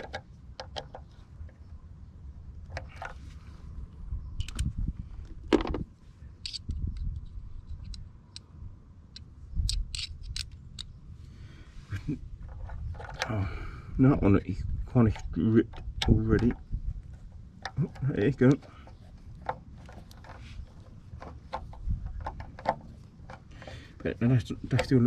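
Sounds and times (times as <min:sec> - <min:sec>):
screwdriver clicking and scraping: 0:06.4 - 0:08.4, 0:09.2 - 0:10.9, 0:17.6 - 0:24.1.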